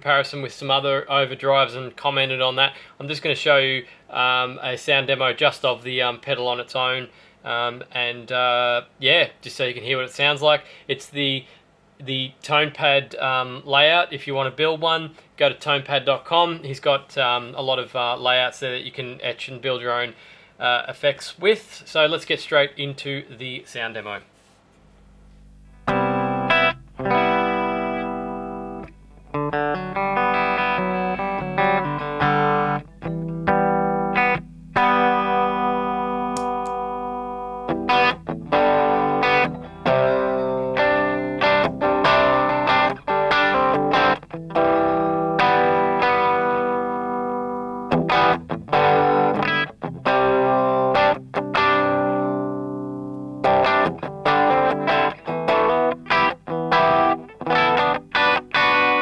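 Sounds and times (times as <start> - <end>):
overdriven electric guitar: 25.1 - 59.0.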